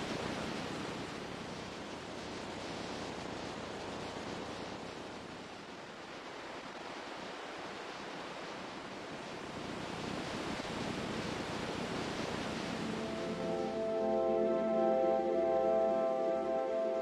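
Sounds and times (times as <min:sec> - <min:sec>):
rushing water: 0:06.2 - 0:15.0.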